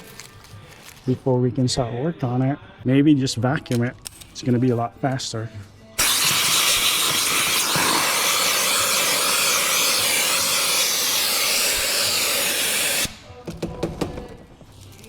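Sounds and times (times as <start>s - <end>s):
vacuum cleaner running: 6.0s - 13.2s.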